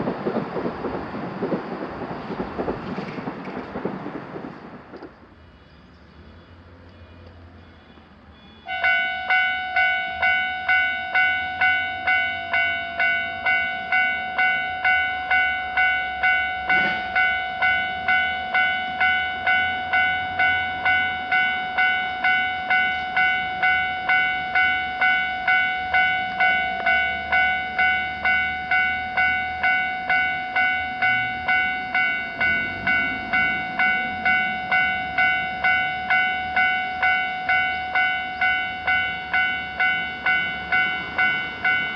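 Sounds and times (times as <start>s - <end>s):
railroad crossing warning bell: 6.3s - 41.9s.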